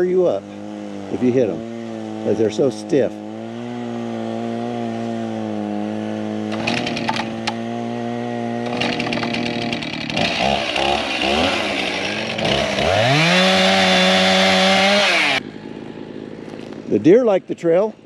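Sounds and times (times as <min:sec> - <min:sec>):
chainsaw cutting branches: 0:00.0 - 0:17.8
branches snapping: 0:06.4 - 0:07.7, 0:08.5 - 0:16.9.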